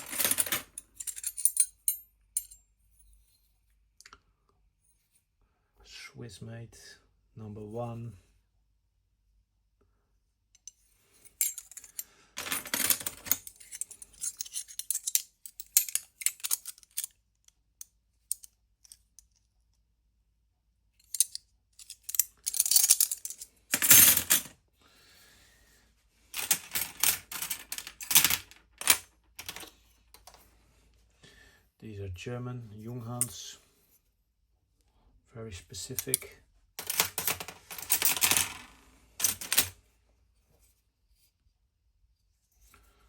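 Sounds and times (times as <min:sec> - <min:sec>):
metal tools clinking together: 0:00.0 - 0:02.6, 0:11.3 - 0:17.1, 0:21.1 - 0:24.5.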